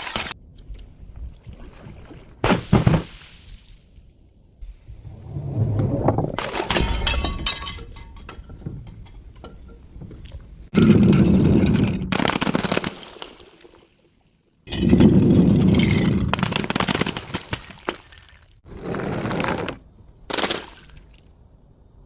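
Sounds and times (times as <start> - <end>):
bottle being crushed: 0.0 - 0.4, 6.4 - 9.6.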